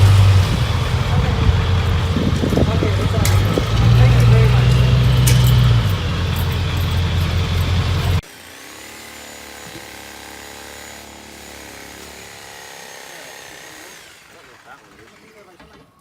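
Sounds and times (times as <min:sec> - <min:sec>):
vehicle engine humming: 0:00.0 - 0:08.2.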